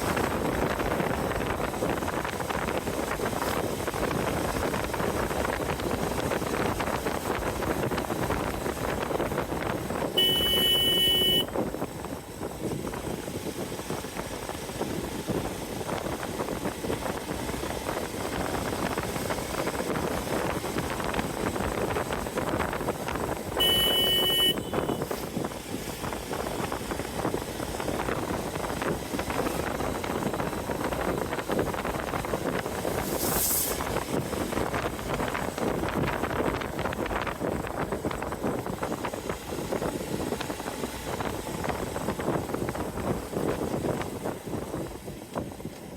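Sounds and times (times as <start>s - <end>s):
motorcycle engine running: 0.0s - 33.0s, 33.9s - 45.9s
horn blasts: 10.2s - 11.5s, 23.6s - 25.3s.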